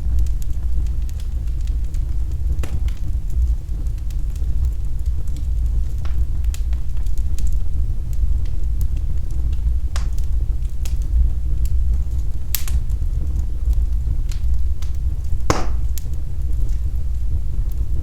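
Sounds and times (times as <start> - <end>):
fire crackling and popping: 0.0 - 18.0.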